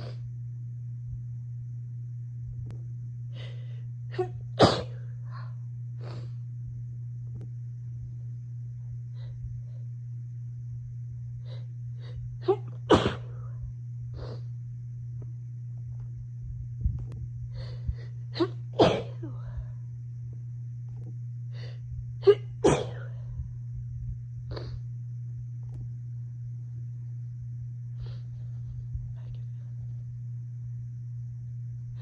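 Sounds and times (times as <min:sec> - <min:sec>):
person sneezing: 0:04.2 - 0:05.0, 0:12.5 - 0:13.4, 0:18.4 - 0:19.5, 0:22.2 - 0:23.2.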